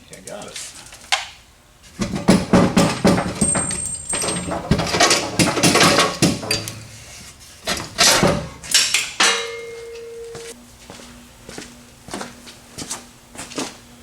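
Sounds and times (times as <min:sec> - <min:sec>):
metal tools clanking and rattling: 0:02.0 - 0:10.3
short ringing note: 0:09.2 - 0:10.6.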